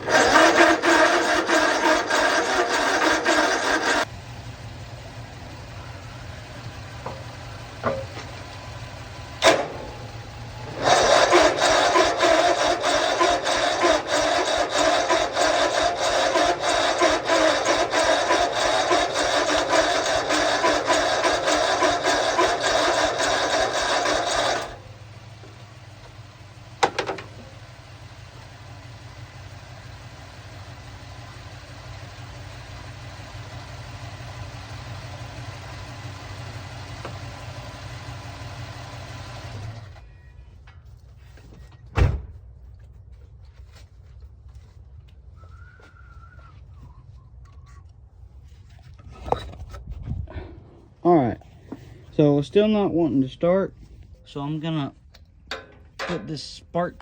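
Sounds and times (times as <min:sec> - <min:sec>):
mower engine cranking: 0:00.0 - 0:04.1, 0:06.0 - 0:27.7, 0:48.8 - 0:49.9, 0:55.1 - 0:57.0
low engine hum: 0:00.0 - 0:57.0.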